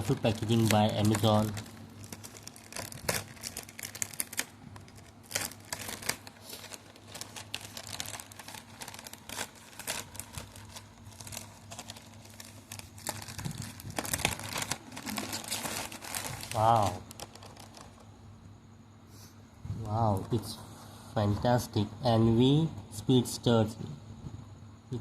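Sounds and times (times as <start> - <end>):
packaging crinkling and tearing: 0.0 - 18.2
faint low hum: 0.0 - 25.0.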